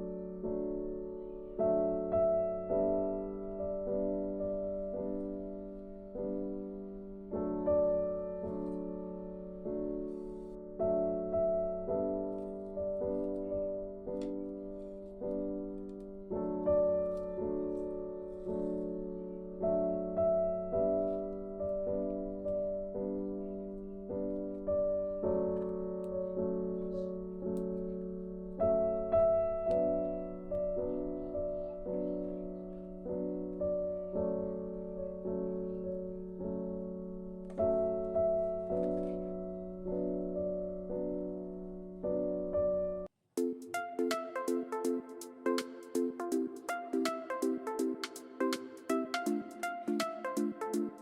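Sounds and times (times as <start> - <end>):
slow soft piano chords: 0.0 - 51.0.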